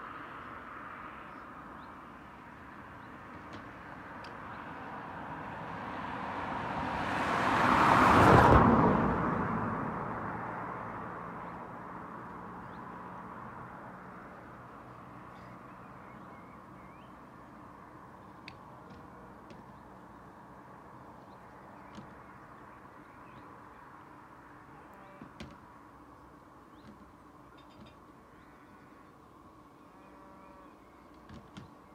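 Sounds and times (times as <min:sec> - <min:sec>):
car passing by: 0:03.5 - 0:15.2
faint bird chirps: 0:15.2 - 0:17.3.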